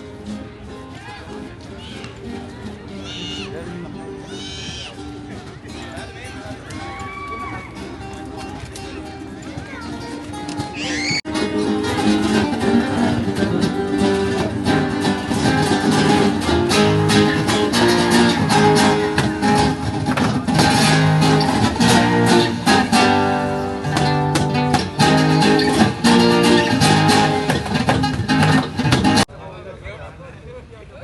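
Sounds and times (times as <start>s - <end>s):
guitar strummed and plucked: 7.7s - 29.3s.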